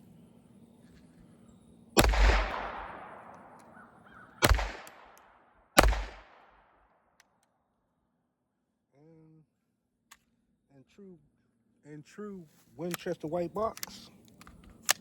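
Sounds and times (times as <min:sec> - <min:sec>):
pistol shots with echo: 0:02.0 - 0:06.8.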